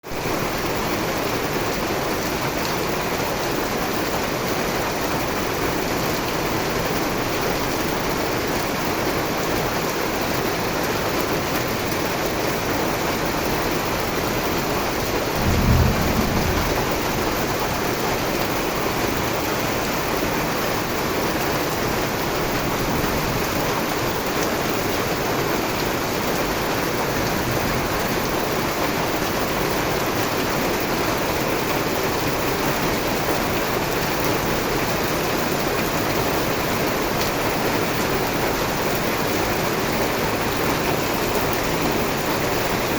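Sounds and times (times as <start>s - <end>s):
steady rain falling: 0.0s - 42.9s
brief low rumble: 15.3s - 17.9s.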